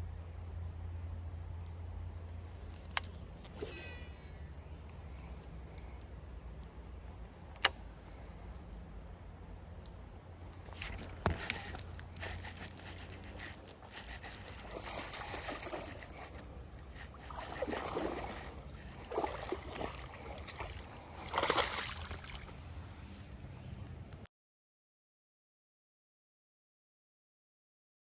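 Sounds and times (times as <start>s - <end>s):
creek water splashing and trickling: 10.4s - 23.4s.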